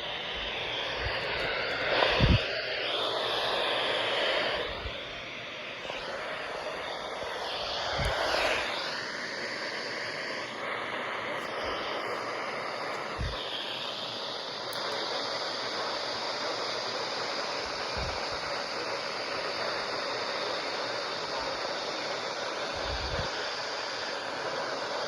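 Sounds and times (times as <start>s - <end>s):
radio static hiss: 0.0s - 25.0s.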